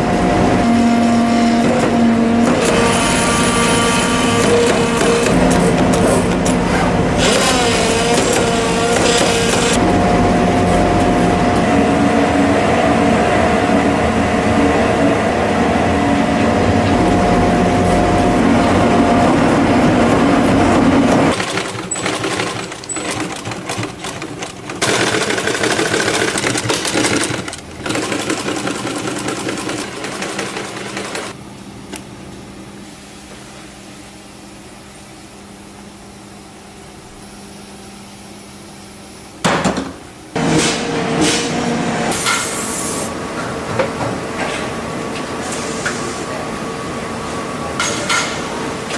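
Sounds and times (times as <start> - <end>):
uneven working noise: 0.0 - 32.4, 39.2 - 48.9
electric motor running: 2.5 - 12.2.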